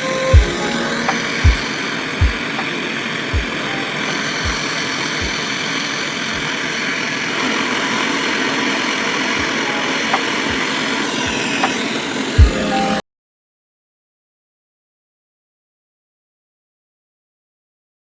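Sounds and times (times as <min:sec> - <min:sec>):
background music: 0:00.0 - 0:05.6, 0:09.0 - 0:13.0
loud rushing noise: 0:00.0 - 0:12.6.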